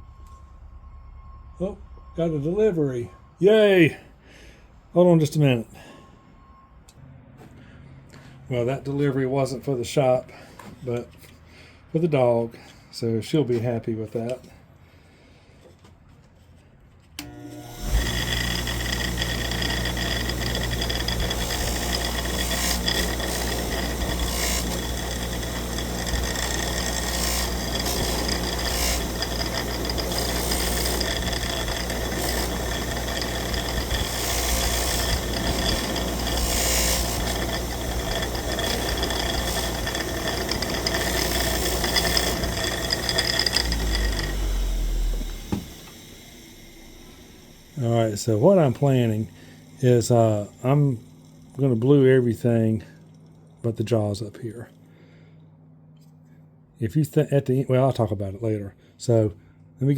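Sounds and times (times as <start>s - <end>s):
bench grinder motor hum: 17.2s - 52.3s
metal grinding on abrasive wheel: 17.2s - 53.6s.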